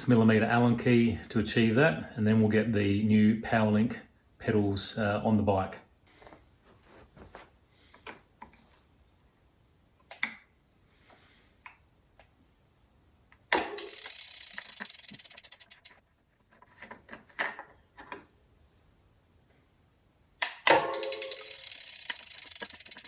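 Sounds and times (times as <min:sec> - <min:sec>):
metal clicks and knocks: 0:13.4 - 0:18.4
rapid ratcheting clicks: 0:13.6 - 0:16.0, 0:20.4 - 0:23.0.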